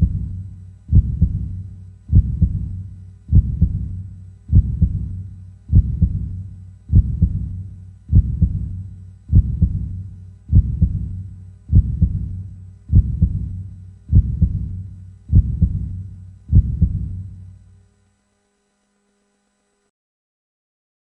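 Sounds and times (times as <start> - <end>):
heartbeat thumps: 0.0 - 17.4
low rumble: 0.0 - 17.5.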